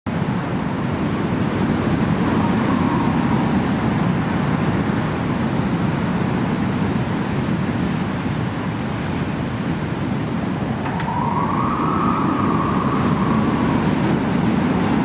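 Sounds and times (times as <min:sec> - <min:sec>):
strong wind: 0:00.1 - 0:15.0
heavy rain: 0:10.3 - 0:15.0.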